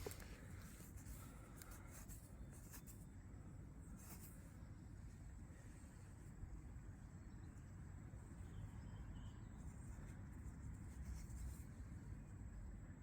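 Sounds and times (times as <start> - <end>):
faint scratching and rustling: 0.0 - 3.1, 3.9 - 6.4, 9.5 - 12.1.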